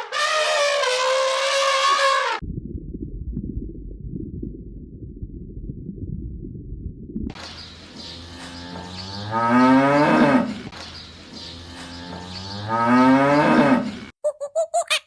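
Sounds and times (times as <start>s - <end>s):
cow mooing: 8.5s - 10.7s, 11.7s - 14.1s.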